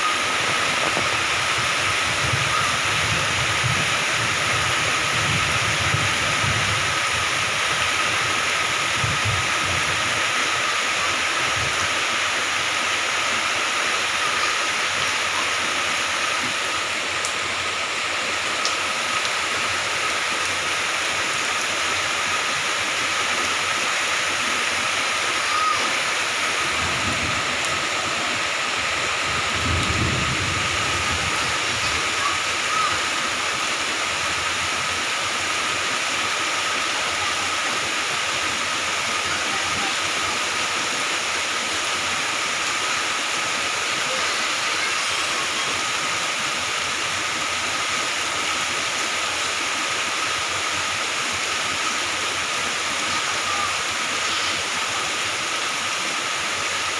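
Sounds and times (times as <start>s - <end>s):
heavy rain falling: 0.0s - 56.9s.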